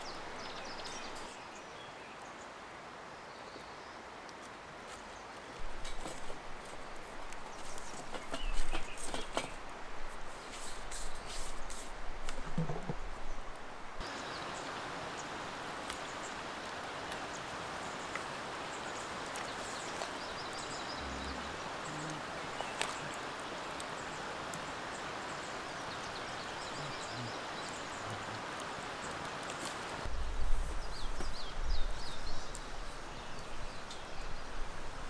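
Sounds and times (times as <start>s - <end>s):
small birds chirping: 0.0s - 2.4s, 7.3s - 9.6s, 14.0s - 35.0s
stream flowing: 9.4s - 30.1s.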